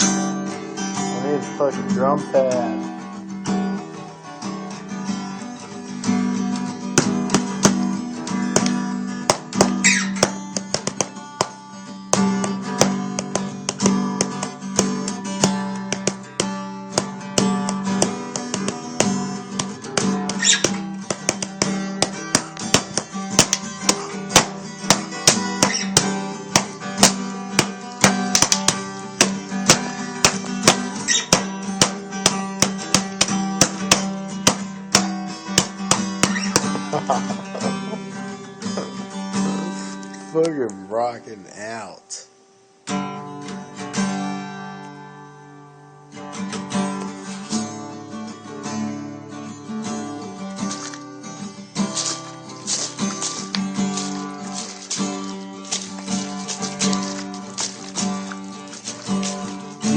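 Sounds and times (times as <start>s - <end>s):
acoustic guitar playing: 0.0s - 59.9s
percussive taps on guitar: 6.1s - 39.6s, 52.7s - 59.9s.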